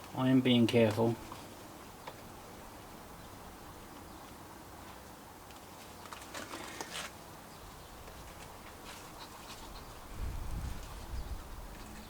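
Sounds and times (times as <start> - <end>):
flocking applicator puffs and rustles: 6.1 - 7.2.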